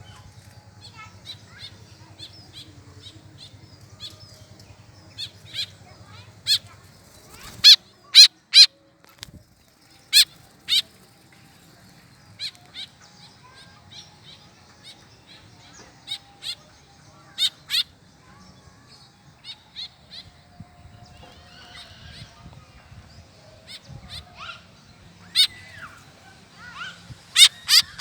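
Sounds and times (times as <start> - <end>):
bird calling: 26.6 - 28.0.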